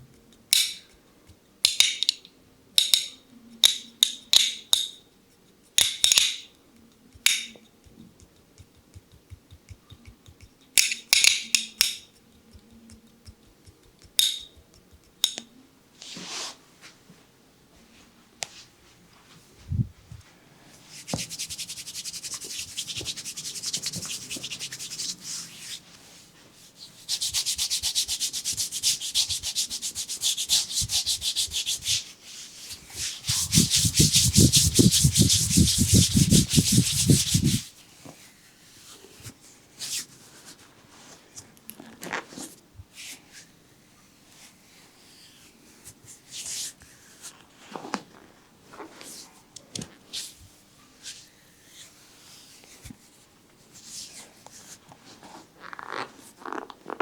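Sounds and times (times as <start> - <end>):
hands rubbing oiled skin: 7.8 - 11.2, 20.1 - 39.0, 53.8 - 57.0.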